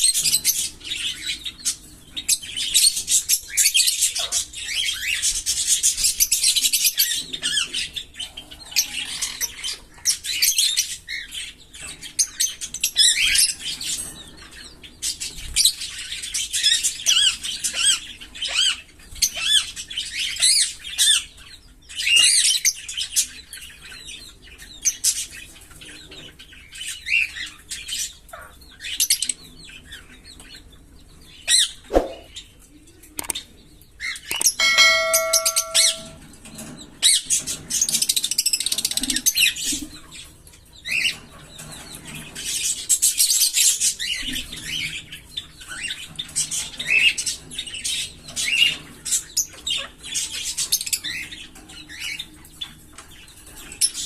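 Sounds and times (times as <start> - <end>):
lovebirds chirping and chattering: 0.0 - 54.0
short ringing tone: 34.6 - 36.2.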